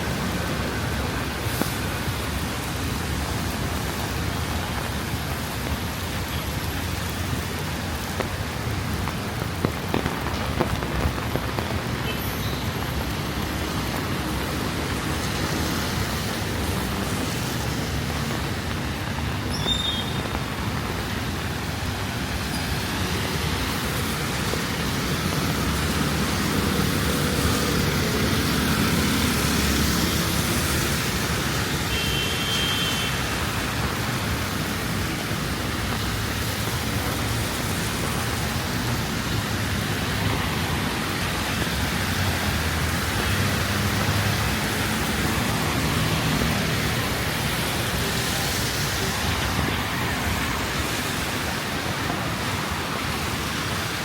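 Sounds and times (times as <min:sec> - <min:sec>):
rain hissing: 0:00.0 - 0:54.0
vehicle engines passing: 0:12.7 - 0:31.9, 0:33.2 - 0:54.0.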